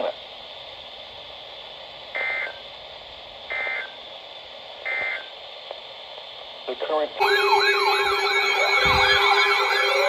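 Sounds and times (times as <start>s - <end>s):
radio hiss: 0.0s - 10.0s
warbling digital squawks: 7.2s - 10.0s.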